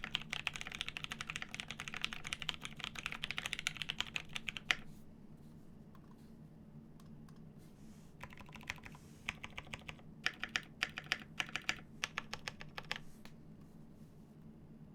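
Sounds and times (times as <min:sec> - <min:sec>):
keyboard typing clacks: 0:00.0 - 0:04.8, 0:08.2 - 0:13.0.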